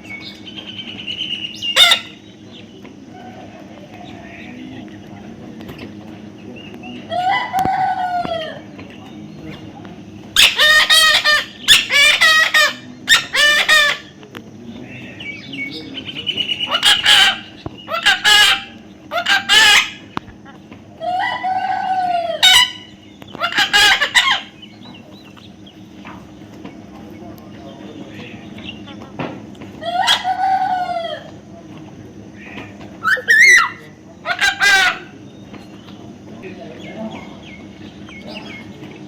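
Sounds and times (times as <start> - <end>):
bird calling harshly: 0.1 - 2.4, 10.4 - 14.2, 15.1 - 20.2, 21.0 - 24.9, 32.4 - 35.2.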